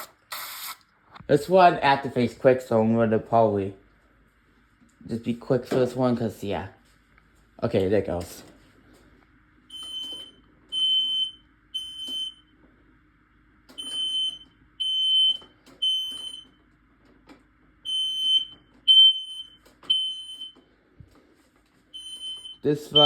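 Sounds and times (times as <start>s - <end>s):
smoke alarm beeping: 9.7s - 12.6s, 13.8s - 16.6s, 17.8s - 20.7s, 21.9s - 23.0s.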